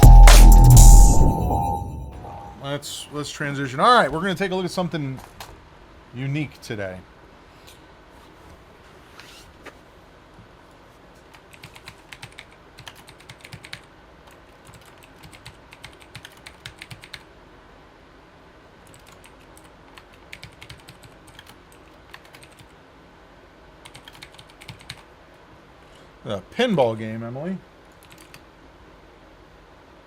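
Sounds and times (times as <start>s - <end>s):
typing on a computer keyboard: 11.3s - 17.3s, 18.8s - 22.8s, 23.8s - 25.1s, 27.9s - 28.5s.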